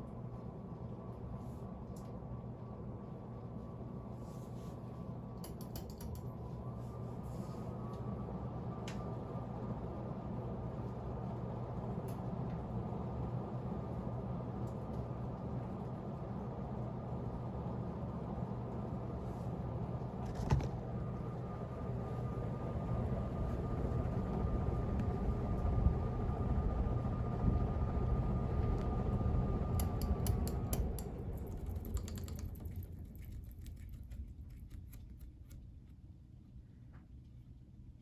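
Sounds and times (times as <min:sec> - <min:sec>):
ceiling fan motor humming: 0:00.0 - 0:38.0.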